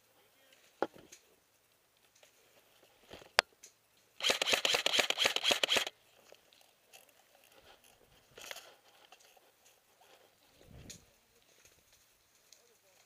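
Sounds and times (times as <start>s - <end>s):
airsoft gun firing full-auto: 4.2s - 5.9s.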